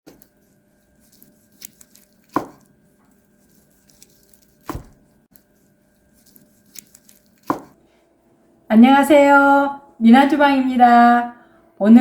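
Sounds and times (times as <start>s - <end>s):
knife striking cutting board: 1.6s - 2.7s, 4.6s - 5.0s, 7.4s - 7.8s.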